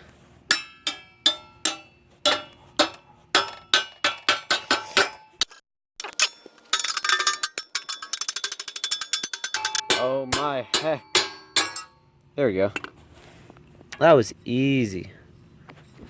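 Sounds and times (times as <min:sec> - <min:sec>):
ringing metal-on-metal strikes: 0:00.5 - 0:05.2, 0:06.2 - 0:12.2.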